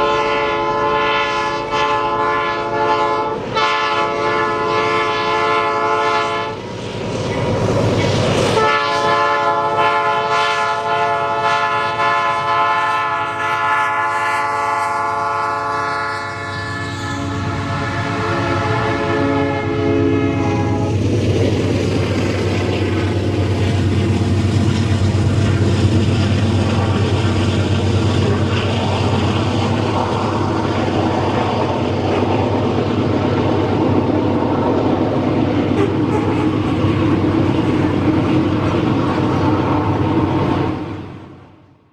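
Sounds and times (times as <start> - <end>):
locomotive air horn: 0.0 - 6.6, 8.5 - 21.0
moving train rumble: 0.0 - 41.9.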